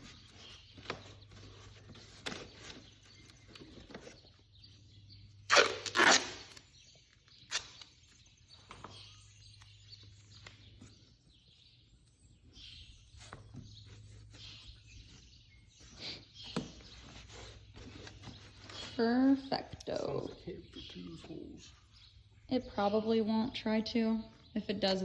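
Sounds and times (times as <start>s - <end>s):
clicks and rustles of handling: 0.0s - 5.0s, 13.2s - 21.8s
duct tape ripping off roll: 5.5s - 6.8s, 7.4s - 8.0s.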